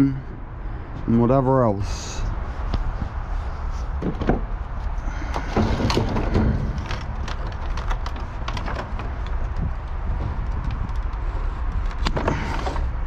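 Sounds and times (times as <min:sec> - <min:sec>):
low rumble: 0:00.0 - 0:13.0
junk clattering in a dumpster: 0:05.2 - 0:09.2.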